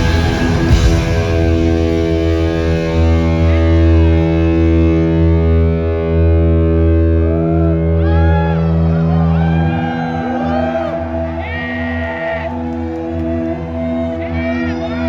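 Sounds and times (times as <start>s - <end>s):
distorted electric guitar chord: 0.0s - 10.0s
crowd shouting and whooping: 6.8s - 15.0s.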